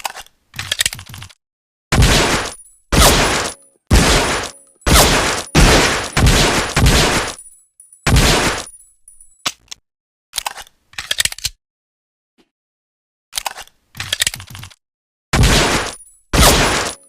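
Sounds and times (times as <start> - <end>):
pistol shots: 1.9 - 7.4, 8.1 - 8.7, 15.4 - 17.0.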